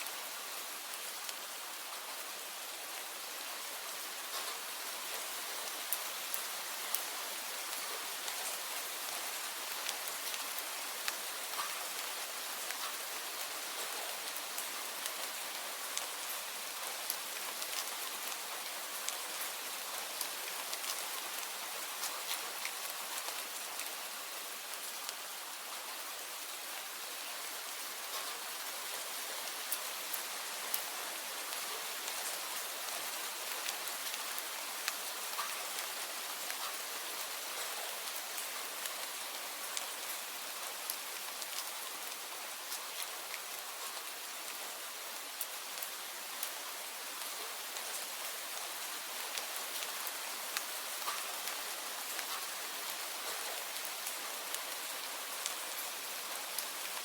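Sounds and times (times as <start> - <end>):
steady rain hiss: 0.0 - 57.0
raindrops ticking: 33.4 - 36.8, 49.2 - 57.0.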